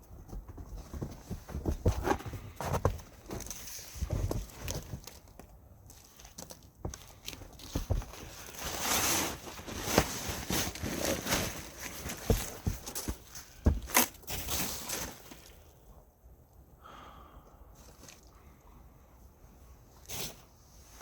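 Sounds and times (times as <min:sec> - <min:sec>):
thumps and knocks: 0:00.0 - 0:05.1, 0:06.8 - 0:08.4, 0:12.0 - 0:14.0
rustling and scraping: 0:00.0 - 0:15.8, 0:19.8 - 0:21.0.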